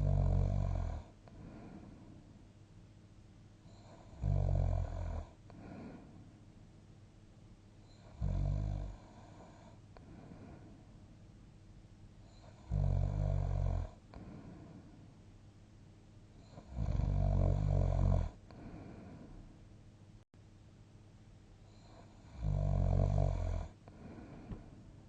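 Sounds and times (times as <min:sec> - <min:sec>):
person snoring: 0:00.0 - 0:02.0, 0:03.7 - 0:06.1, 0:12.4 - 0:14.8, 0:16.4 - 0:19.3, 0:21.8 - 0:24.6
soft breathing: 0:01.2 - 0:02.4, 0:05.4 - 0:06.5, 0:09.0 - 0:11.0, 0:14.1 - 0:15.2, 0:18.4 - 0:19.5, 0:23.7 - 0:25.0.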